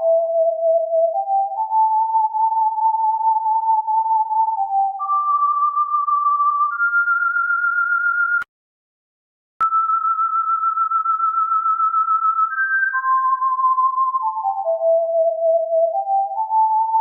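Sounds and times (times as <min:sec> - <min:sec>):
electronic sine-wave tones: 0:09.6 - 0:17.0.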